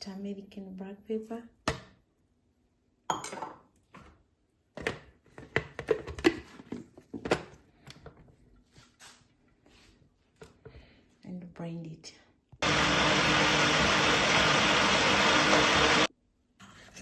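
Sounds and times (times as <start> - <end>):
kitchenware clinking and knocking: 3.1 - 3.6.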